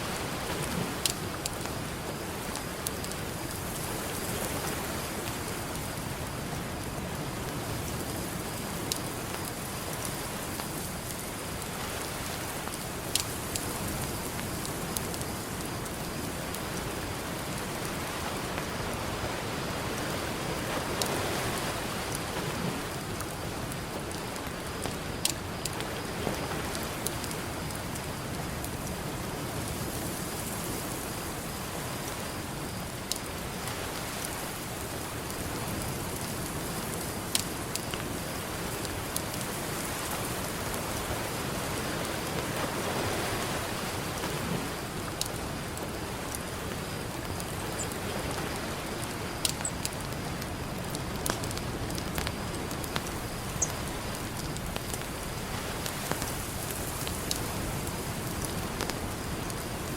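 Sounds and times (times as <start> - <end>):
campfire crackling and popping: 0.0 - 19.1, 19.8 - 30.8, 31.4 - 59.9
ocean surf: 38.0 - 59.9.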